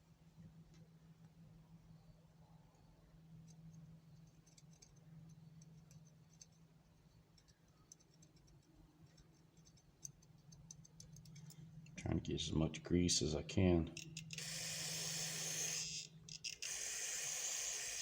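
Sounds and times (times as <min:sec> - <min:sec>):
small ratchet parts clicking: 0:03.4 - 0:12.0, 0:13.9 - 0:18.0.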